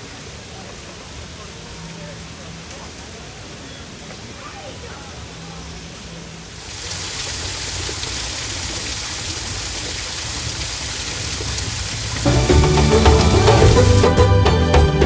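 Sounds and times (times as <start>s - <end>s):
rushing water: 6.3s - 14.4s.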